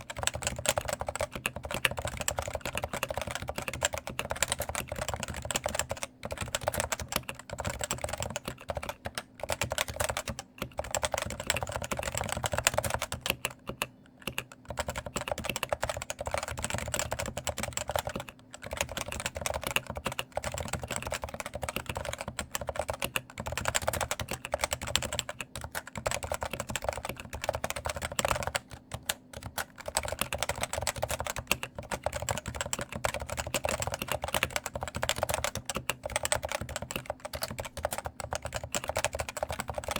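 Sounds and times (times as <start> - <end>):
fast typing on keyboard: 0.0 - 39.9.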